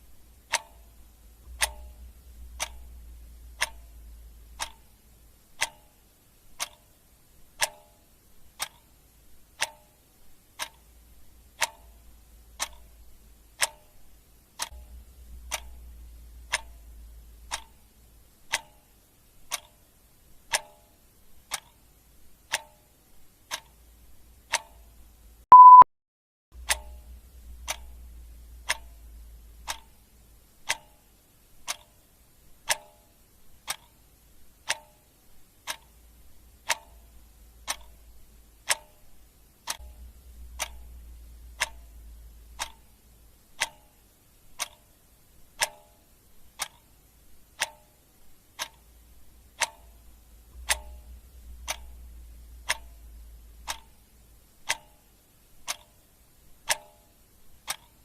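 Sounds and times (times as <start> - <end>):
clock ticking: 0.0 - 25.8, 26.6 - 58.0
short loud beep: 25.5 - 25.9.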